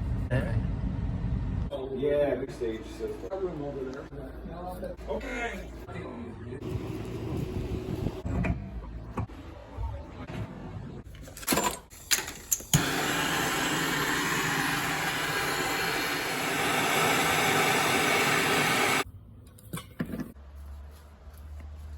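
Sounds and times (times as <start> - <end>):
blower rushing noise: 12.8 - 19.0.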